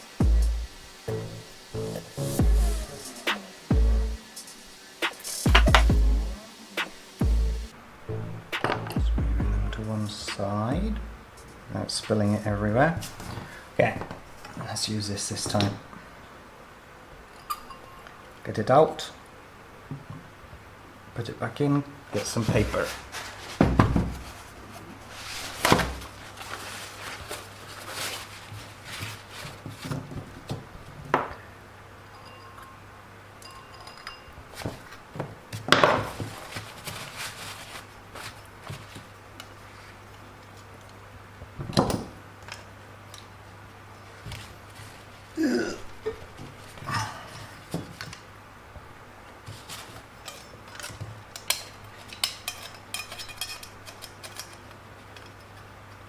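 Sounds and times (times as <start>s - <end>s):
steady low hum: 0.0s - 13.1s
plastic parts clicking and clattering: 49.6s - 55.7s.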